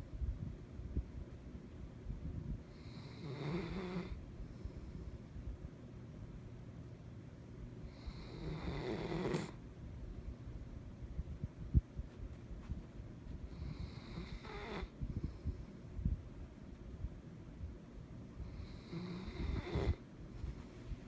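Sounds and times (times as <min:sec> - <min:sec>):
dog snoring: 0:02.7 - 0:04.2, 0:07.9 - 0:09.6, 0:13.5 - 0:15.0, 0:18.4 - 0:20.0.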